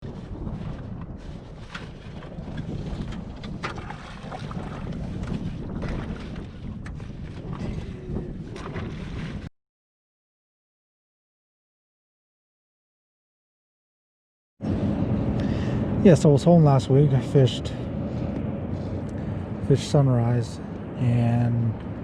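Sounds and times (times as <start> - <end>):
wind buffeting microphone: 0.0 - 9.5, 14.6 - 22.0.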